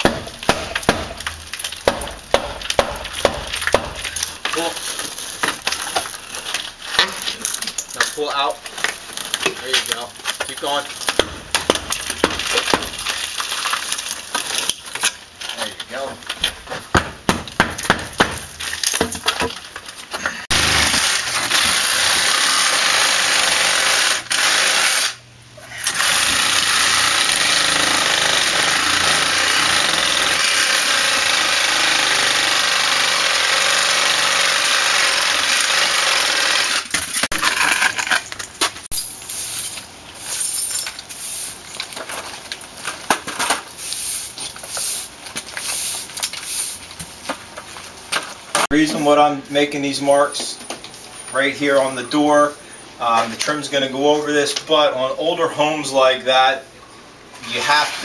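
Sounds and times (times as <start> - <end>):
knocks and clatter: 0.0 - 4.6
power tool running: 20.5 - 25.2, 25.8 - 37.3.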